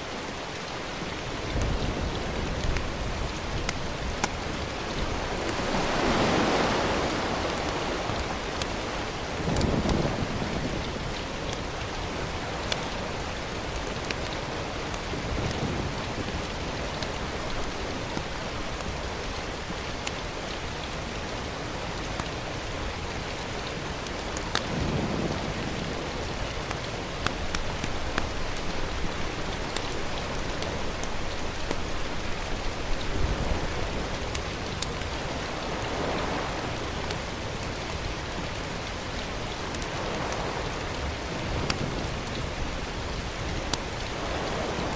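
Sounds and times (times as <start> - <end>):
small pops and crackles: 1.5 - 5.6, 7.0 - 15.7, 16.3 - 21.1, 22.0 - 24.9, 25.8 - 36.0, 36.7 - 40.5.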